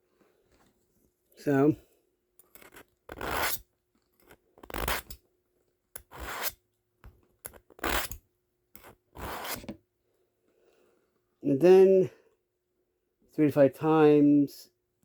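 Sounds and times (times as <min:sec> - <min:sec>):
knife rasping through sharpener: 0:02.5 - 0:03.6, 0:04.2 - 0:05.2, 0:06.0 - 0:06.6, 0:07.5 - 0:08.2, 0:08.8 - 0:09.7.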